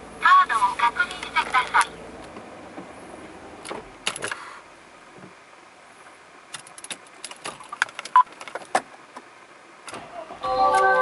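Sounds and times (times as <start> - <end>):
light clicks and rattles: 6.5 - 10.0.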